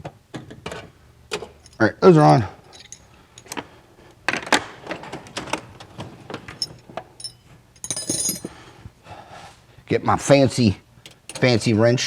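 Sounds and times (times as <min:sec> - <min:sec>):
metal tools clinking: 0:01.6 - 0:03.6, 0:06.5 - 0:08.6, 0:11.1 - 0:11.7
metallic jangle: 0:02.6 - 0:03.5, 0:06.6 - 0:08.5.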